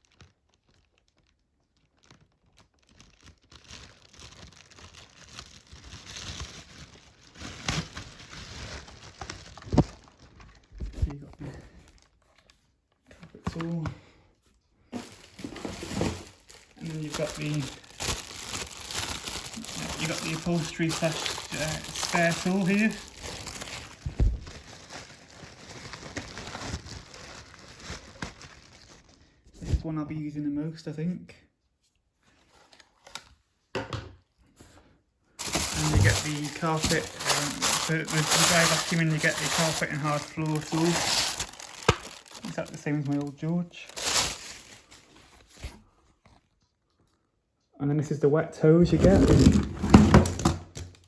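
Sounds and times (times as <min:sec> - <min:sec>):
plastic and cardboard crinkling: 0:00.0 - 0:13.8, 0:14.9 - 0:29.6, 0:32.2 - 0:33.4, 0:35.4 - 0:47.2, 0:48.8 - 0:51.0
packing tape peeling and tearing: 0:16.0 - 0:29.0, 0:35.4 - 0:43.3, 0:43.9 - 0:45.1.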